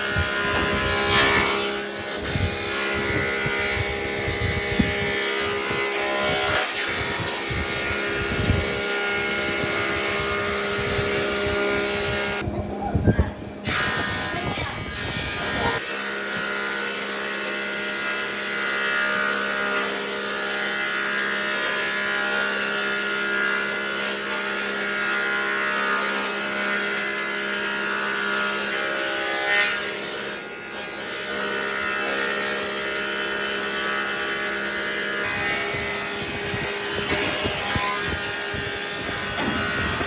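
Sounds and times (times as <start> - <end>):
electric power tool motor running: 0.0 - 12.4, 29.8 - 40.0.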